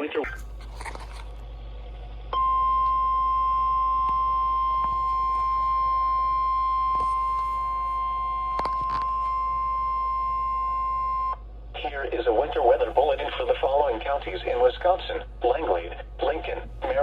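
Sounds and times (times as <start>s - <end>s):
steady alarm tone: 2.1s - 11.3s.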